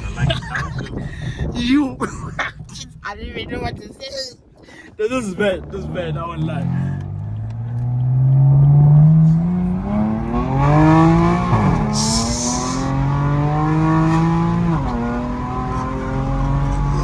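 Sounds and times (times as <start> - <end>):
car engine accelerating hard: 5.4 - 17.0.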